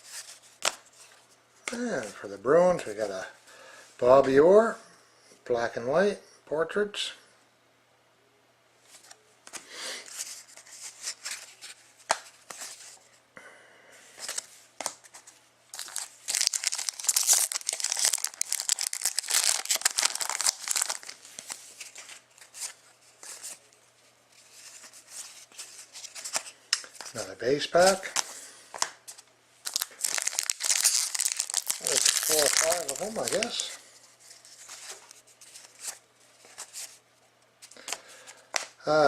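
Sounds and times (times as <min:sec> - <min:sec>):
cards being handled: 0:00.0 - 0:02.2, 0:08.9 - 0:13.0, 0:14.2 - 0:37.0, 0:37.6 - 0:38.8
wrapper tearing and crinkling: 0:15.7 - 0:21.3, 0:29.6 - 0:33.8.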